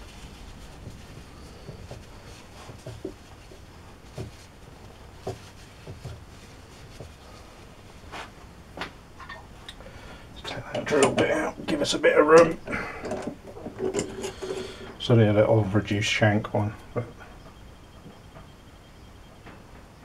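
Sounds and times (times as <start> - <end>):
metal tools knocking and clicking: 12.4 - 14.6.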